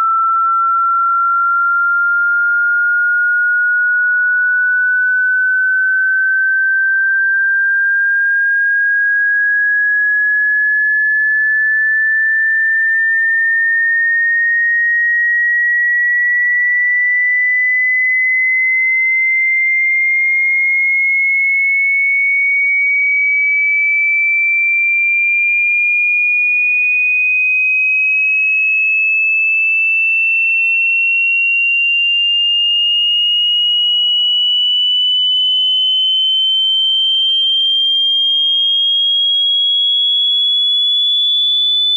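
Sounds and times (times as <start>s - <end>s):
rising sine tone: 0.0s - 20.8s, 30.2s - 41.9s.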